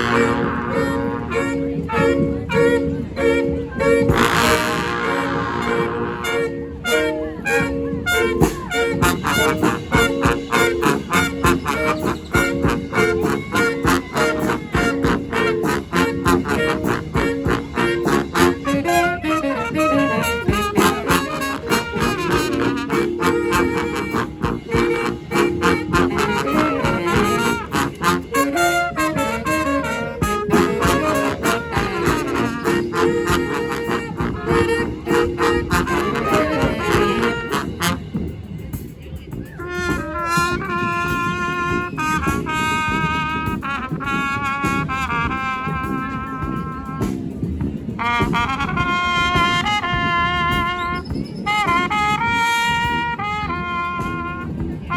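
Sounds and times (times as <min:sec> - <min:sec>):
brass band playing: 0:00.0 - 0:54.9
percussion beating: 0:00.0 - 0:54.9.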